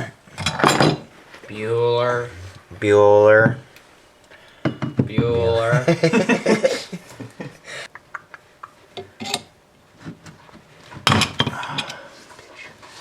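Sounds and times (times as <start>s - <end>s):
metal tools clinking on workbench: 9.2s - 9.5s.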